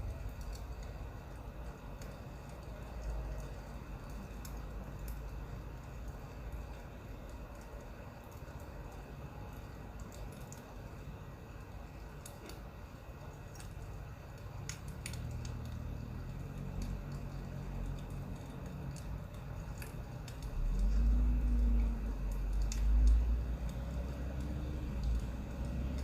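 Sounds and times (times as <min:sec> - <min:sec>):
wood fire crackling: 0:00.0 - 0:26.0
low hum: 0:16.0 - 0:26.0.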